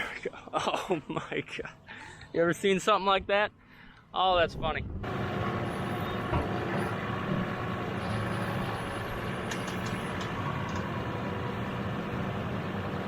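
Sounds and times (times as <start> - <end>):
truck engine humming: 5.0 - 13.0.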